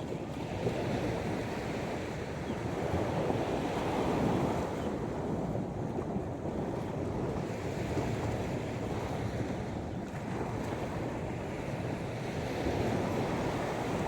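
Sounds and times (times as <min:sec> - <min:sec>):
wind rumbling on microphone: 0:00.0 - 0:14.0
sea waves breaking on beach: 0:10.2 - 0:14.0.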